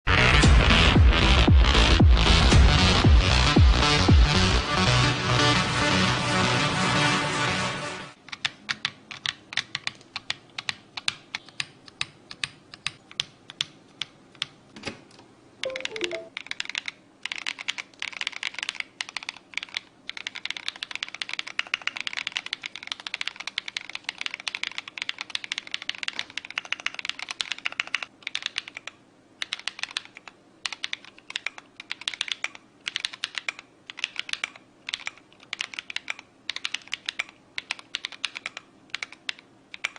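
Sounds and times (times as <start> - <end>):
mechanical keyboard typing: 8.3 - 14.6, 15.6 - 39.9.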